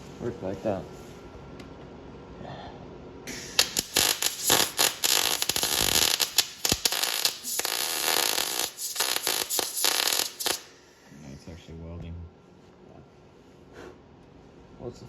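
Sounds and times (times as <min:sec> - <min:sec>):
welder arc crackling: 0:03.3 - 0:10.8.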